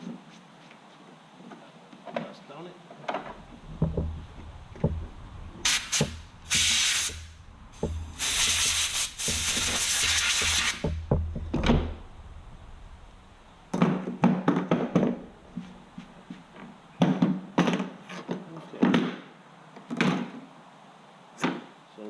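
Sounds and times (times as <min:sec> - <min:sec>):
short scraping: 0:05.5 - 0:11.0
hissing spray: 0:05.6 - 0:11.0.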